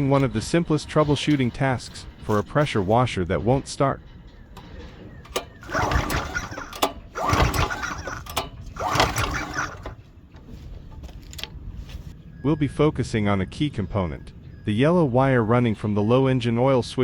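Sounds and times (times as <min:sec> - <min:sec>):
engine pull-start cranking: 0:00.0 - 0:03.0, 0:04.4 - 0:11.6.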